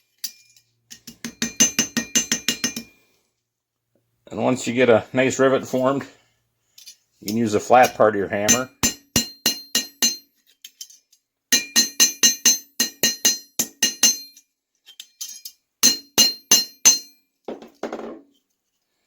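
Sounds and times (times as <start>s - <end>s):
faint metal clinks: 0.0s - 3.1s, 6.7s - 7.1s, 13.1s - 17.2s
hammer tapping metal rivets: 0.2s - 3.0s, 6.8s - 18.2s.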